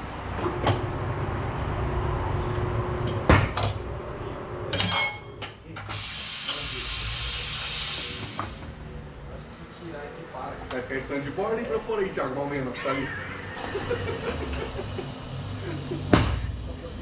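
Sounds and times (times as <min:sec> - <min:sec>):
compressed air hissing: 0:05.9 - 0:08.8, 0:13.5 - 0:17.0
low machine rumble: 0:13.2 - 0:17.0.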